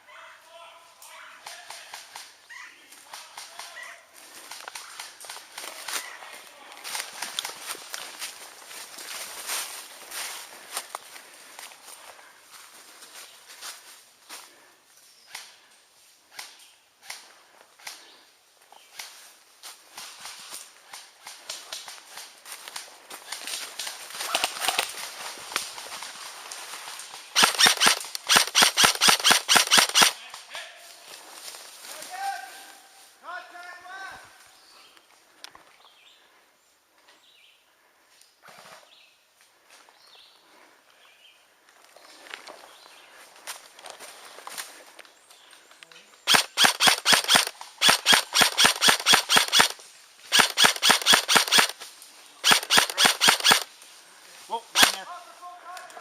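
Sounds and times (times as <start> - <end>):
airsoft gun shots: 27.4 - 30.2, 46.3 - 51.7, 52.4 - 53.7, 54.8 - 55.0.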